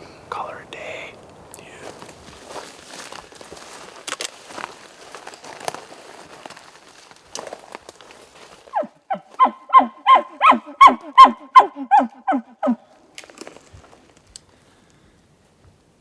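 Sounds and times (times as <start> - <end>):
animal honking call: 8.7 - 12.8.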